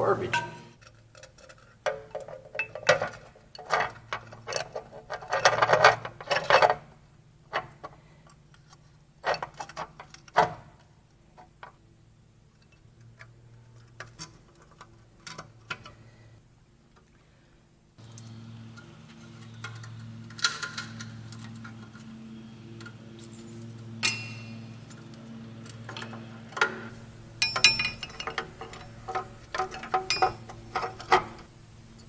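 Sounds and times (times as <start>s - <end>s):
metal parts clinking: 18.0s - 26.9s.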